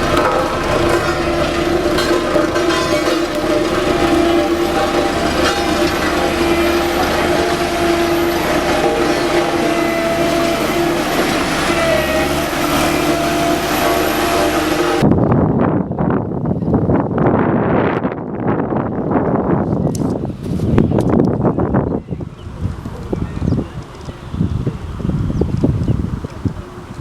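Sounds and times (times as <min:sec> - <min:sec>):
diesel machinery engine droning: 0:00.0 - 0:15.1
wind buffeting microphone: 0:00.0 - 0:27.0.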